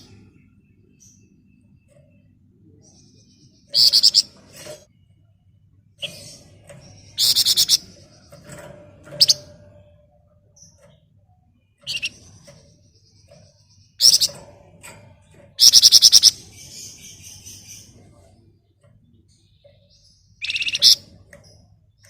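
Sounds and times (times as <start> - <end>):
songbird rattling trills: 0.0 - 4.9, 6.0 - 18.3, 19.3 - 22.0
high bird calls: 2.8 - 4.9, 6.0 - 10.0, 11.8 - 14.4, 15.6 - 18.2, 19.6 - 21.3
bird sharp chattering: 2.9 - 4.9, 7.0 - 8.3, 11.9 - 12.4, 13.0 - 14.4, 15.6 - 17.9, 19.9 - 21.2.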